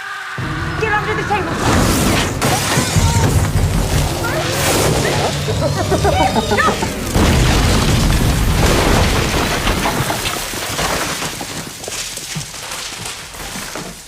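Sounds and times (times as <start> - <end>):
explosion with deep rumble: 6.9 - 10.4.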